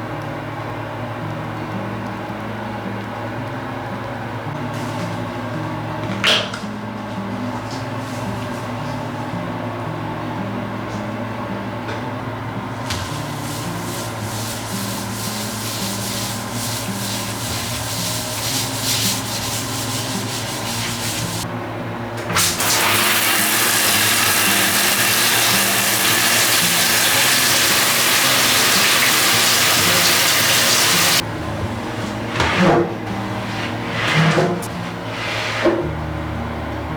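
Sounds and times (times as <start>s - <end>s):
soft background music: 0.0s - 36.9s
scrubbing strokes: 13.0s - 21.4s.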